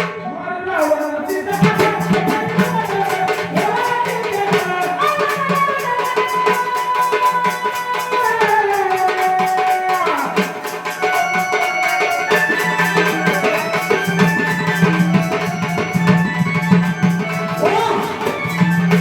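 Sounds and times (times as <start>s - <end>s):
fast hand drum rhythm: 0.8s - 19.0s
jingling percussion: 0.8s - 19.0s
sliding melody line: 10.4s - 19.0s.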